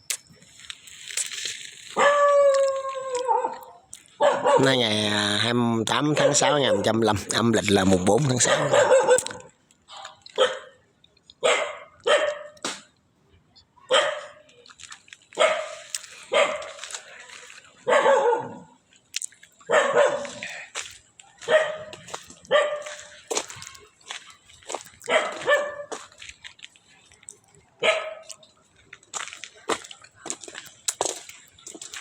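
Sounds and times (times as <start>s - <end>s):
dog barking: 2.0s - 4.8s, 6.1s - 7.0s, 8.4s - 10.8s, 11.4s - 12.6s, 13.8s - 14.5s, 15.4s - 16.8s, 17.8s - 18.8s, 19.7s - 20.6s, 21.4s - 23.1s, 25.0s - 26.0s, 27.8s - 28.4s.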